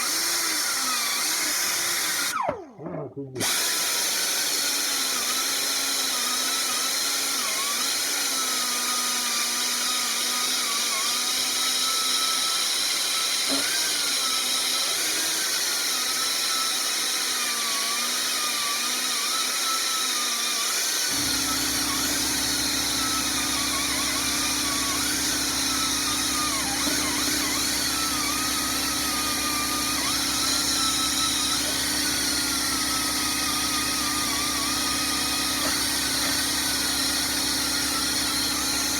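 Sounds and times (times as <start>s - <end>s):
pneumatic grinder whining: 0.0s - 38.9s
air compressor humming: 21.1s - 38.9s.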